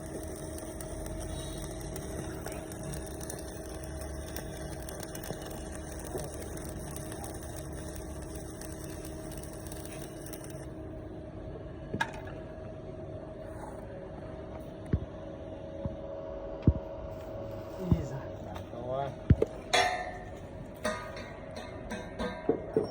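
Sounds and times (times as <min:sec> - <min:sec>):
welding machine humming and hissing: 0:00.0 - 0:11.0.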